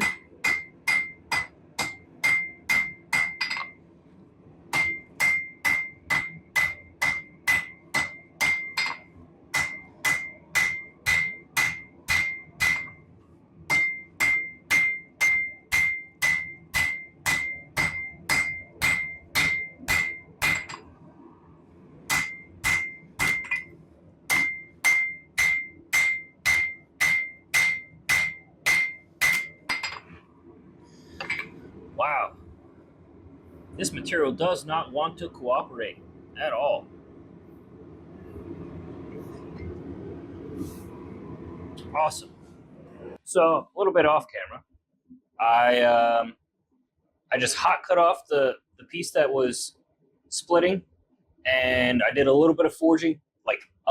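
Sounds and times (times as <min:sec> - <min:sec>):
hammer striking steel on anvil: 0:00.0 - 0:03.8, 0:04.7 - 0:13.0, 0:13.7 - 0:20.8, 0:22.1 - 0:23.7, 0:24.3 - 0:30.2, 0:31.2 - 0:31.6.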